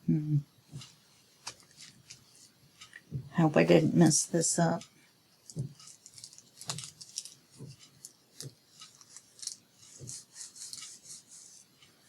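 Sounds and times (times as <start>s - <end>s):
paper and card being handled: 5.5s - 11.7s.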